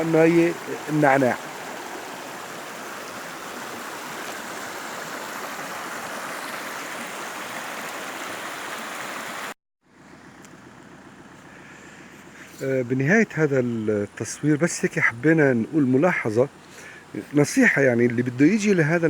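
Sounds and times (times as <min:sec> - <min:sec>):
stream water flowing: 0:00.0 - 0:09.6, 0:12.3 - 0:19.0
quiet outdoor hush: 0:10.0 - 0:19.0.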